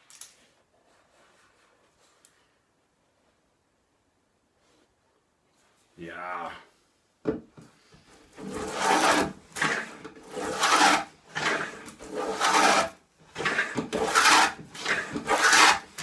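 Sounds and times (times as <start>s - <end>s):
wood plane shaving: 8.3s - 16.0s.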